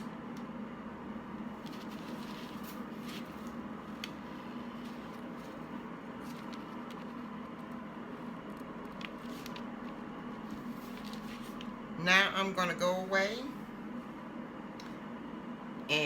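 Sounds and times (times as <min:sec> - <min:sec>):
room hum: 0:00.0 - 0:16.0.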